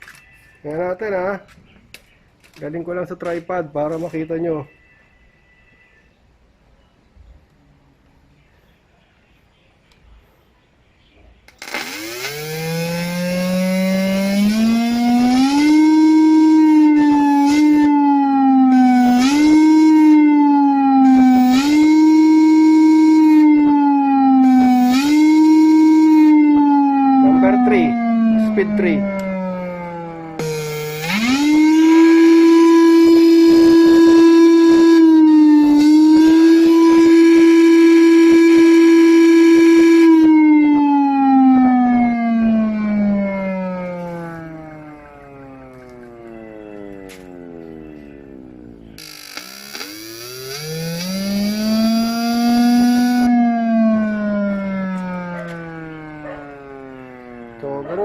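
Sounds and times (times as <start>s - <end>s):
electronic engine imitation tone: 11.5s - 58.0s
electronic engine sound effect: 46.0s - 53.9s.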